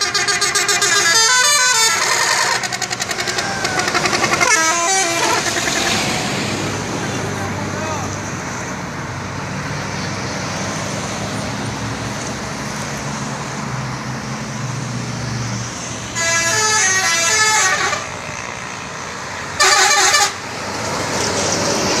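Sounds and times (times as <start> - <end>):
bus musical horn tune: 0.0 - 6.5, 16.2 - 18.2, 19.6 - 20.4
bus engine running: 0.0 - 22.0
road noise: 0.0 - 22.0.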